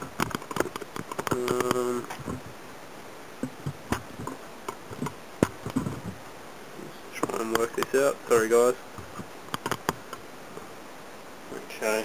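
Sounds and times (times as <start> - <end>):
camera handling clicks and knocks: 9.0 - 10.2.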